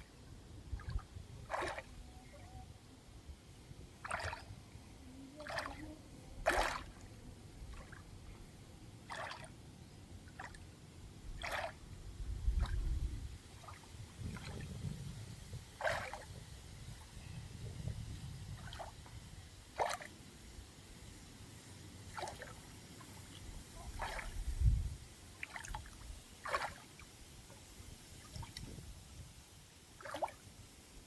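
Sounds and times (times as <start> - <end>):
water splashing and dripping: 0.8 - 1.9, 4.0 - 4.5, 5.4 - 5.8, 6.4 - 7.0, 9.1 - 9.5, 11.4 - 11.8, 15.8 - 16.2, 18.6 - 19.0, 19.8 - 20.1, 22.1 - 24.4, 25.4 - 27.0, 28.2 - 28.8, 30.0 - 30.4.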